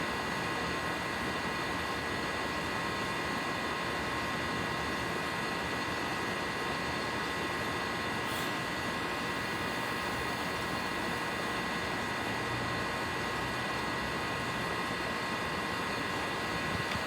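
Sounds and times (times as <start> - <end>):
heat pump unit rushing: 8.0 - 14.0
faint steady whine: 8.2 - 17.0.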